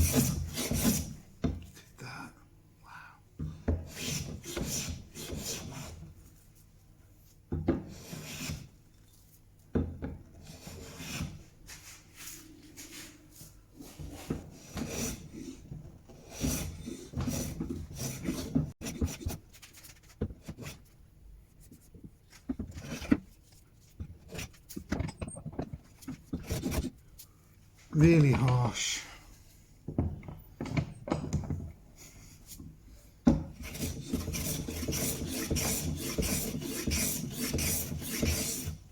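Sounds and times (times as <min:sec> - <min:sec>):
hand plane cutting wood: 0:33.5 - 0:38.8.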